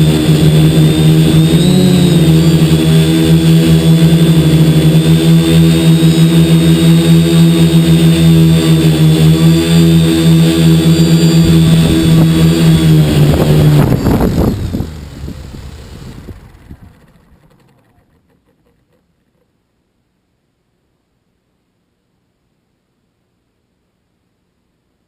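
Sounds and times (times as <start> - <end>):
drone motors buzzing whine: 0.0 - 18.5.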